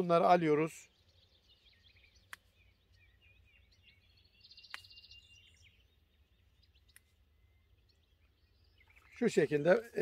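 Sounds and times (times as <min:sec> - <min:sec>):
small birds chirping: 0:00.0 - 0:10.0
sharp click: 0:04.7 - 0:05.0.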